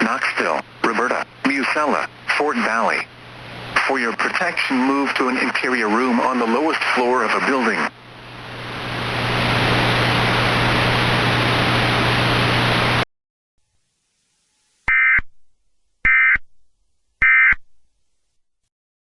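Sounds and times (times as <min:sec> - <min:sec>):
loud static hiss: 0:00.0 - 0:13.0.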